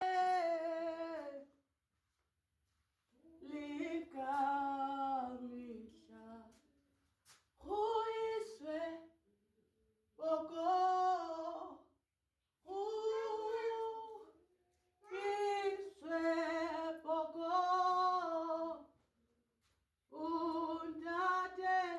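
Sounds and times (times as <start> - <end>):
person singing unaccompanied: 0.0 - 1.5, 3.2 - 6.6, 7.6 - 9.1, 10.2 - 11.8, 12.7 - 14.4, 15.0 - 18.9, 20.1 - 21.9.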